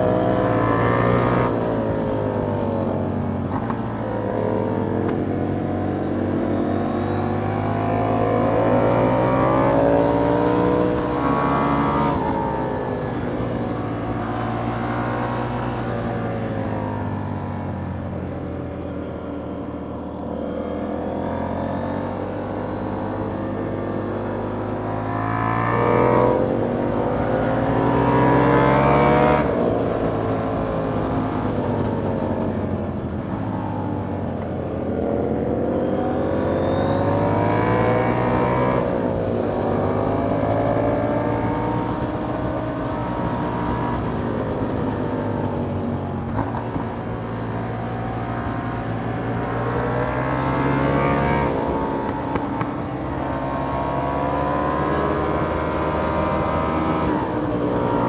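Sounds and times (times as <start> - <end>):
motorcycle engine revving: 34.9 - 45.3.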